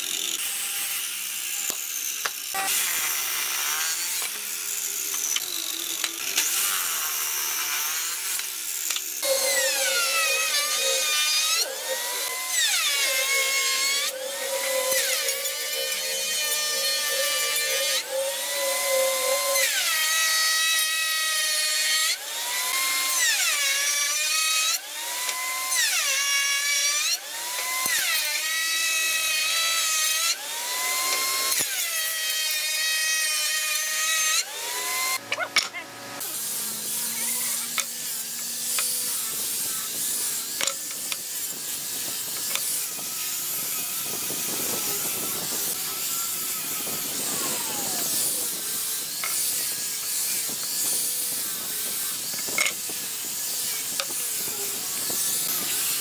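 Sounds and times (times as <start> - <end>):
power tool motor spinning: 0.0 - 32.8, 33.4 - 56.0
tool rasping on wood: 5.0 - 20.1, 37.0 - 55.7.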